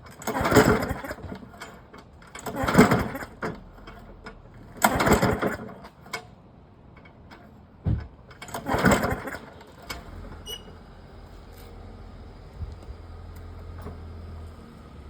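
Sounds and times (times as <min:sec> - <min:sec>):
engine turning over: 0:00.0 - 0:06.2, 0:08.3 - 0:15.0
lawn mower recoil starter pulls: 0:00.0 - 0:06.4, 0:08.3 - 0:11.9.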